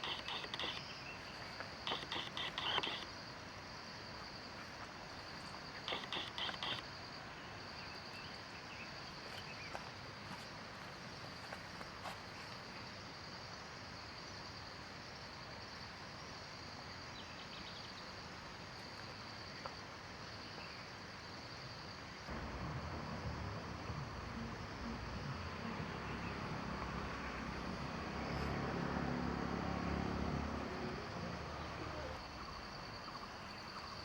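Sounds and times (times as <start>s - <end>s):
faint ticks: 0.0s - 3.6s, 4.6s - 6.9s
insects trilling: 0.0s - 34.0s
low rumbling noise: 22.3s - 27.8s.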